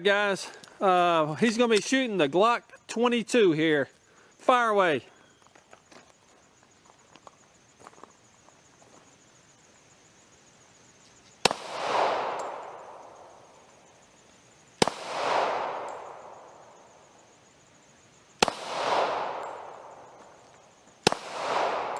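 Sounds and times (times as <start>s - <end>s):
pistol shots with echo: 11.4s - 13.2s, 14.8s - 16.7s, 18.4s - 20.0s, 21.0s - 21.9s.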